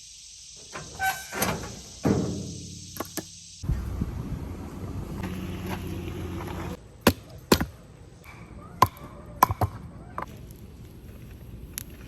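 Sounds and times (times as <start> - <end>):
steady low rumble: 3.6 - 6.8.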